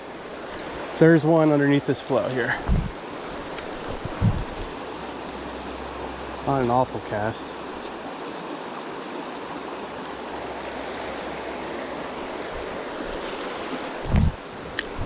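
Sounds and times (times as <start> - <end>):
creek running over rocks: 0.0 - 15.0
short low thump: 2.6 - 2.9, 4.0 - 4.6.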